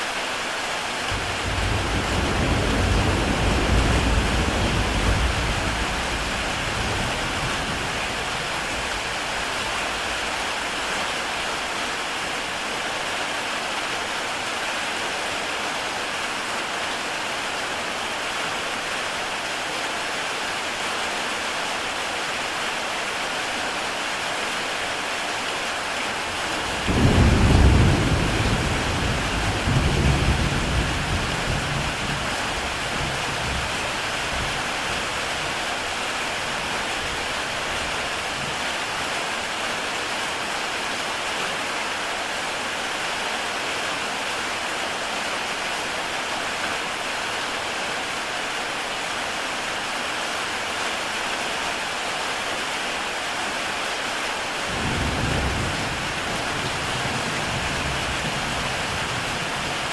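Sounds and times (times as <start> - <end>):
heavy rain on a tile roof: 0.0 - 59.9
thunder rolling: 1.1 - 10.2.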